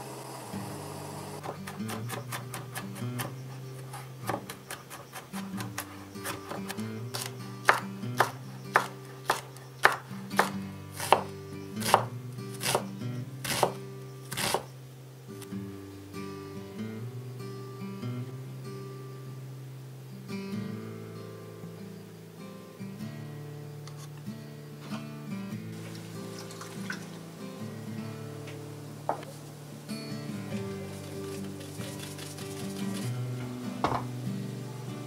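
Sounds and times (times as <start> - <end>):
soft acoustic guitar music: 0.0 - 35.0
knife chopping on cutting board: 1.4 - 14.7.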